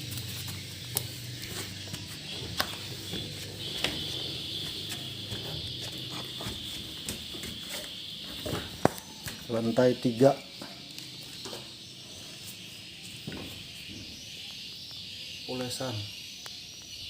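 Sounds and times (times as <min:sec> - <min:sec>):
high-pitched buzz: 0:00.0 - 0:08.8.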